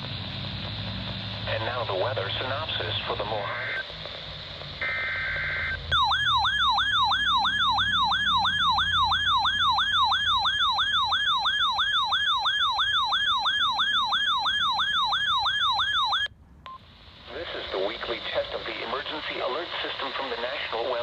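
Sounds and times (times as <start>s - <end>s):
warbling alert siren: 3.3s - 3.8s, 4.8s - 16.3s
screechy digital data tone: 4.8s - 16.3s.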